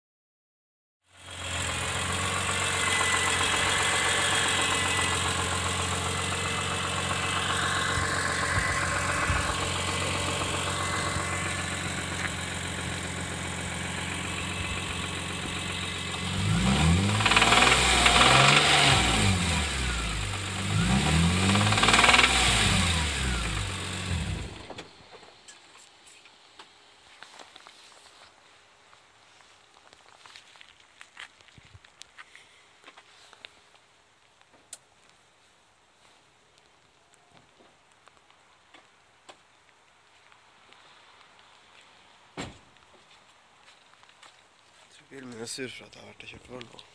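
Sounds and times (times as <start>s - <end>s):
engine revving: 1.1s - 24.8s
car engine idling with knock: 1.2s - 25.4s.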